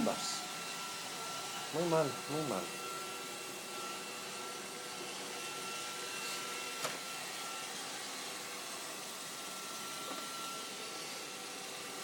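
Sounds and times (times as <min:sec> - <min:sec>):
robot vacuum whirring: 0:00.0 - 0:12.0.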